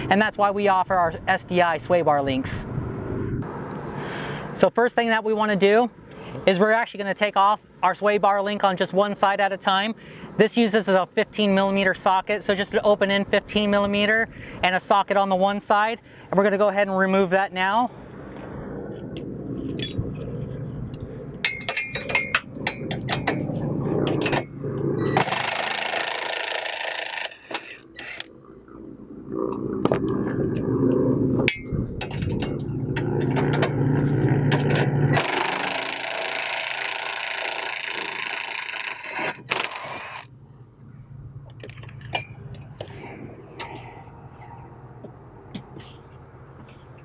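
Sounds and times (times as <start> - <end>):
low steady hum: 0.0 - 47.0
ratchet clicking rattle: 25.2 - 28.3, 34.7 - 40.3.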